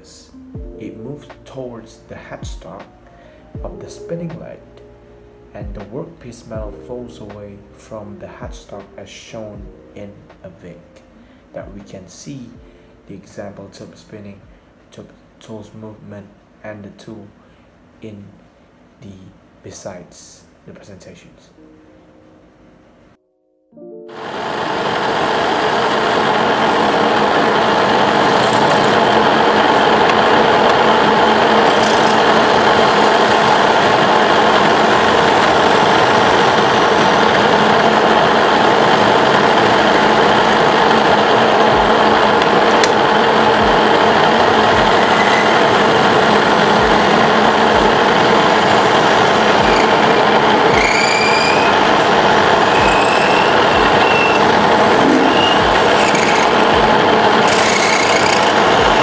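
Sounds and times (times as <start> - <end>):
metal forming machine grinding: 25.3 - 59.0
short rising squeals: 43.0 - 59.0.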